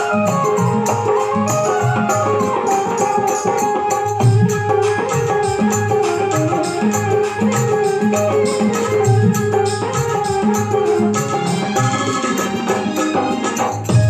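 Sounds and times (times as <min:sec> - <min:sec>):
hand drums beating: 0:00.0 - 0:14.0
held melodic instrument tones: 0:00.0 - 0:14.0.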